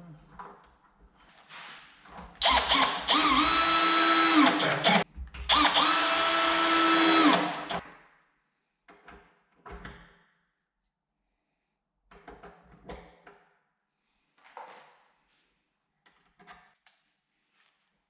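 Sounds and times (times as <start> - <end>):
power drill motor whine: 2.4 - 7.8.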